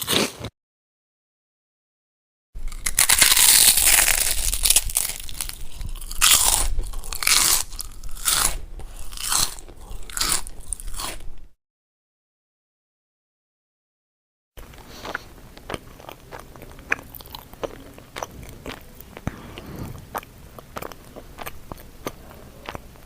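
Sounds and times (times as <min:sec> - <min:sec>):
person chewing crunchy food: 0:00.0 - 0:00.5, 0:02.6 - 0:11.5, 0:14.6 - 0:23.0.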